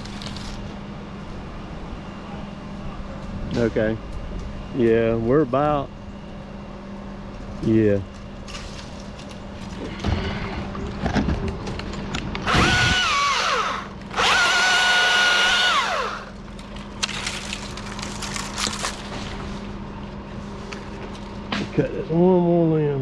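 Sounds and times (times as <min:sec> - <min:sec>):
chainsaw revving: 0:12.4 - 0:16.3.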